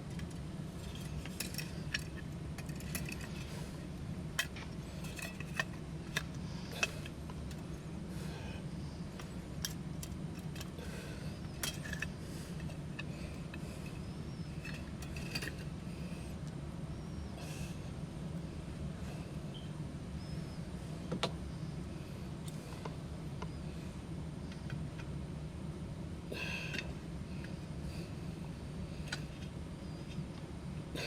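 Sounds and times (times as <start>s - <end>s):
metal parts clinking: 0.1s - 7.6s, 11.5s - 15.7s.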